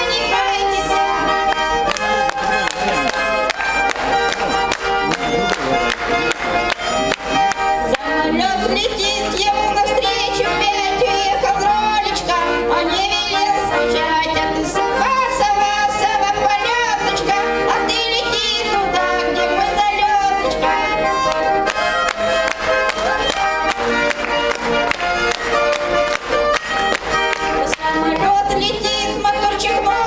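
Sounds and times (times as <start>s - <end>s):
woman singing: 0.0s - 1.8s, 7.3s - 21.8s, 27.1s - 30.0s
button accordion chords: 0.0s - 30.0s.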